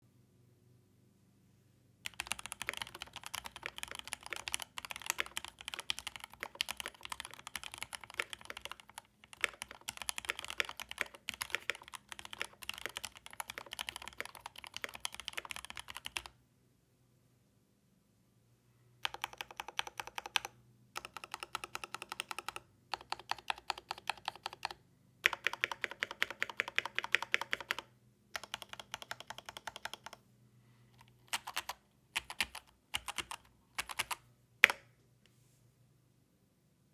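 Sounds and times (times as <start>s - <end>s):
mechanical keyboard typing: 2.0s - 16.4s, 19.0s - 30.2s, 31.0s - 34.8s.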